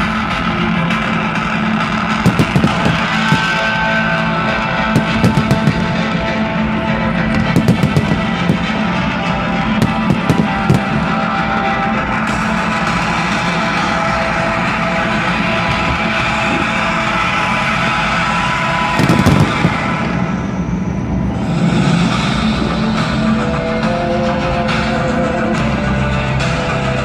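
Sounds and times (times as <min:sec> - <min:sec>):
rock music with electric guitar: 0:00.0 - 0:20.7, 0:22.6 - 0:27.0
firework bangs and crackles: 0:00.1 - 0:20.9.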